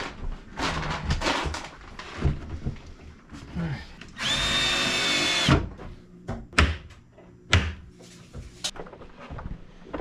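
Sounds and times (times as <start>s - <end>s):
power drill driving screw into wood: 4.2s - 5.6s.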